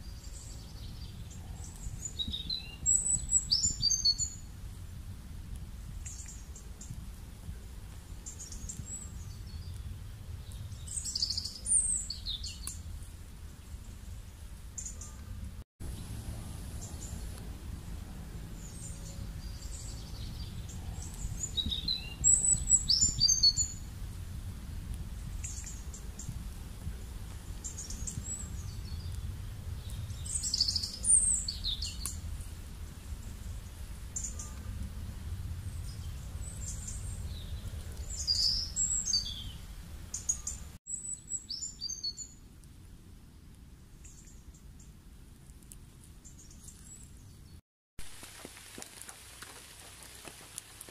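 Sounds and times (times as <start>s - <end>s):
steady low rumble: 0.0s - 40.8s
songbirds chirping: 0.0s - 42.8s, 43.8s - 47.6s.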